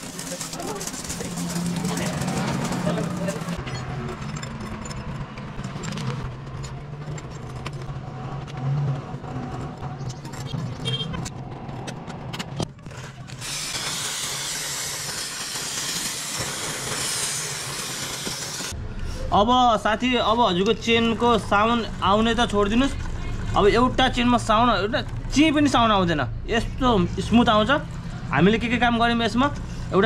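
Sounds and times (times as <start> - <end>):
motorcycle engine running: 0.0 - 7.0.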